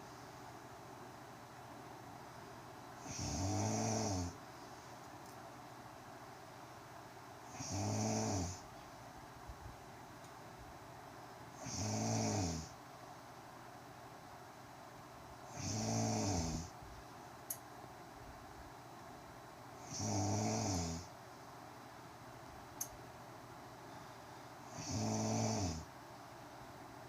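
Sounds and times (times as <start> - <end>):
quiet breathing: 0.0 - 0.6, 3.0 - 5.2
woman snoring: 3.0 - 4.4, 7.5 - 8.6, 11.6 - 12.7, 15.5 - 16.7, 19.8 - 21.1, 24.7 - 25.9.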